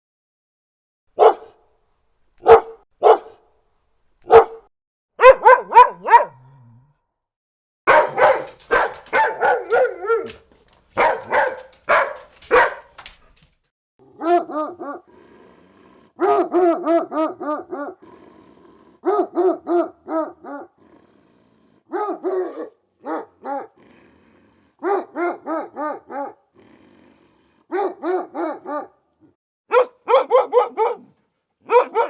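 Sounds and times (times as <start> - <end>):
big dog barking: 1.2 - 1.6, 2.4 - 3.4, 4.2 - 6.6, 7.9 - 13.4, 14.0 - 15.1, 16.1 - 18.0, 19.0 - 20.8, 21.9 - 23.8, 24.7 - 26.5, 27.6 - 32.0.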